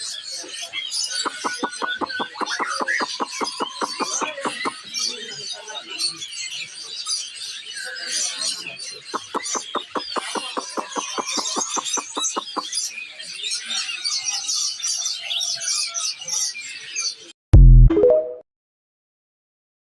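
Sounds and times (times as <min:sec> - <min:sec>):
caged songbirds chirping: 0:00.0 - 0:17.3
rapid pulsed bird calls: 0:01.1 - 0:04.9, 0:09.0 - 0:12.7.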